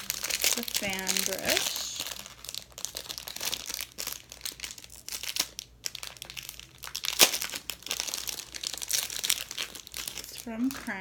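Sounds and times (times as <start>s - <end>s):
sharp packaging crack: 0.0s - 10.4s
packaging crinkling: 0.0s - 11.0s.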